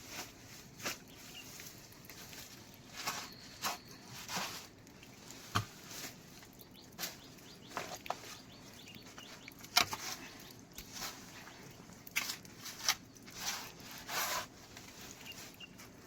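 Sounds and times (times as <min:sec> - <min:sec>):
faint steady hiss: 0:00.0 - 0:16.0.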